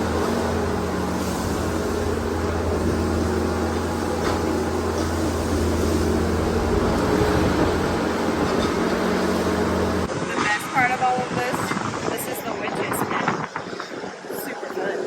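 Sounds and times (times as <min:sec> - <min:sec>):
machinery engine humming: 0:00.0 - 0:15.0.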